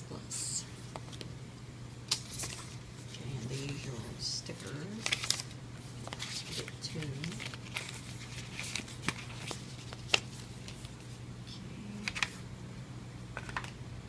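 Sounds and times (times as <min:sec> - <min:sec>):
packaging rustling and clicking: 0:04.6 - 0:10.9.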